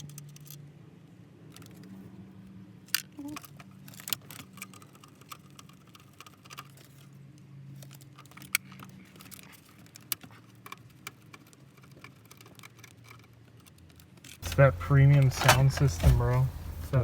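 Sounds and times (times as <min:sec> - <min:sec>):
hand tools clicking and rattling: 0:03.0 - 0:07.1, 0:07.8 - 0:17.0
faint low hum: 0:14.4 - 0:17.0.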